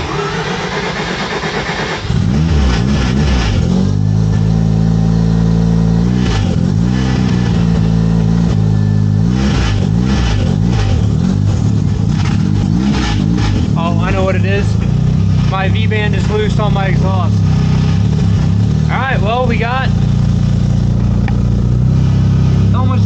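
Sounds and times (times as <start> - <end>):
rotary engine revving: 0.0 - 23.0
exhaust clamp rattle: 5.8 - 23.0.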